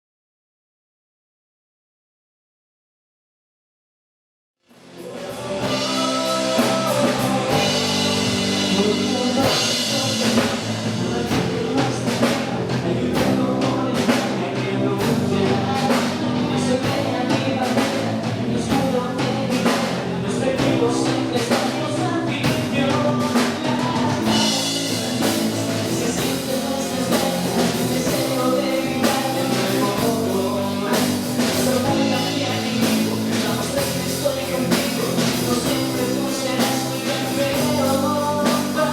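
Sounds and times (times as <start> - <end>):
drum kit: 4.7 - 38.9
rock band playing: 4.7 - 38.9
person singing: 4.9 - 38.9.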